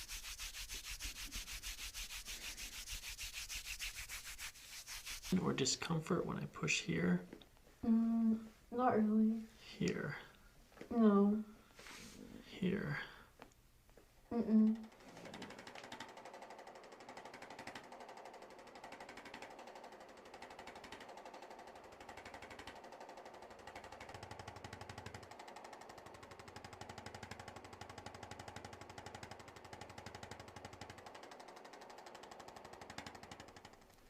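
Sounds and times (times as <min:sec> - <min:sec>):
percussion massager pulsing: 0:00.0 - 0:06.0, 0:14.3 - 0:34.0.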